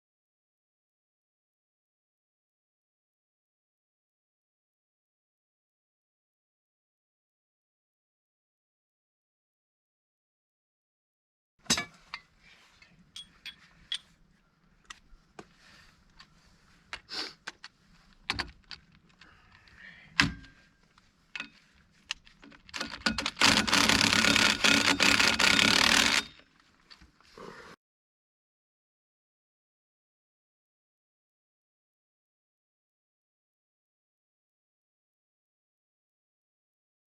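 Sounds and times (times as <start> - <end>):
metal tools clinking: 11.7 - 14.2, 22.4 - 26.4.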